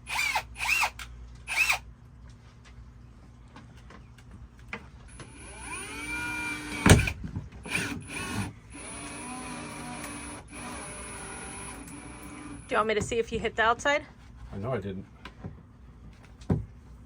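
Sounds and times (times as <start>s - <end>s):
electric drill boring into wood: 0.0s - 1.8s, 5.2s - 12.6s.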